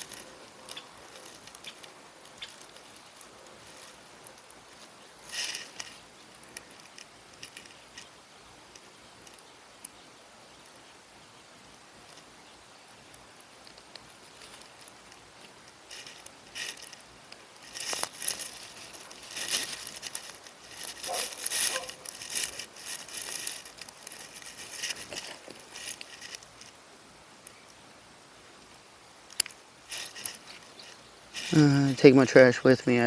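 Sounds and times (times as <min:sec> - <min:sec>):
plastic wrapping crinkling: 0:00.0 - 0:08.1, 0:13.7 - 0:26.7, 0:29.4 - 0:32.0.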